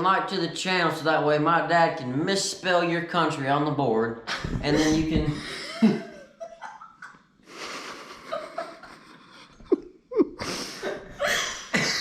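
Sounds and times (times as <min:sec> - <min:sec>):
person speaking: 0:00.0 - 0:06.2
person breathing: 0:04.8 - 0:05.7, 0:07.5 - 0:09.6, 0:10.4 - 0:11.7.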